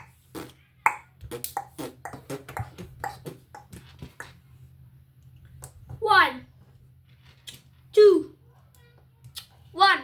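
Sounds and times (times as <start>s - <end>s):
child beatboxing clicks and pops: 0.0s - 4.4s.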